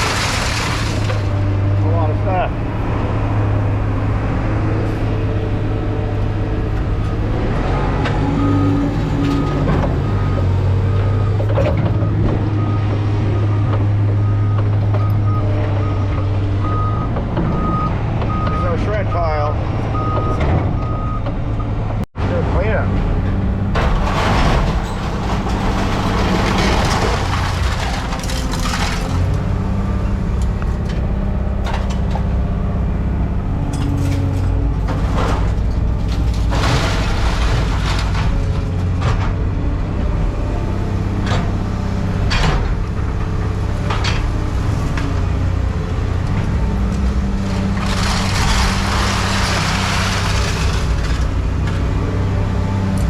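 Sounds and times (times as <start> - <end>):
knocks and clanks: 23.2 - 29.5, 42.2 - 42.9.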